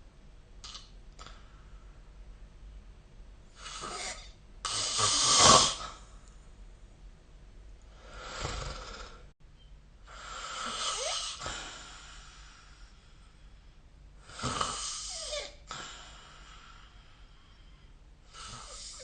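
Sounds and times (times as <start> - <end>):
person snoring: 8.0 - 9.3, 10.1 - 12.8, 14.3 - 16.7.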